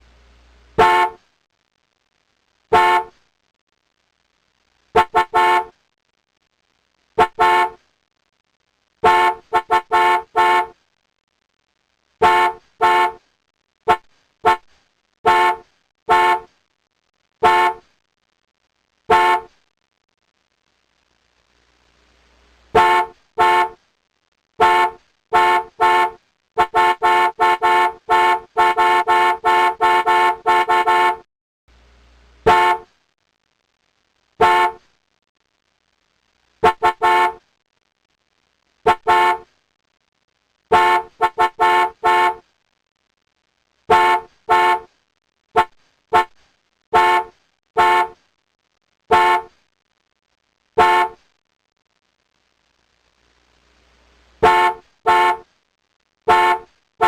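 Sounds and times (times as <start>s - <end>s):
car horn honking: 0.8s - 1.2s, 2.7s - 3.1s, 5.0s - 5.7s, 7.2s - 7.8s, 9.0s - 10.7s, 12.2s - 13.2s, 13.9s - 14.6s, 15.3s - 16.5s, 17.4s - 17.8s, 19.1s - 19.5s, 22.8s - 23.8s, 24.6s - 31.2s, 32.4s - 32.9s, 34.4s - 34.8s, 36.6s - 37.4s, 38.9s - 39.4s, 40.7s - 42.4s, 43.9s - 44.9s, 45.6s - 46.3s, 47.0s - 48.2s, 49.1s - 49.5s, 50.8s - 51.2s, 54.4s - 55.4s, 56.3s - 56.7s.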